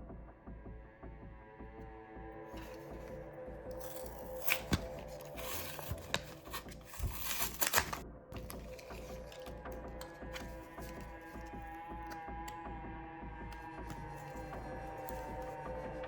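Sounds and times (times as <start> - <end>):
soft background music: 0.0 - 16.0
wrapper tearing and crinkling: 2.6 - 12.2, 13.8 - 15.6.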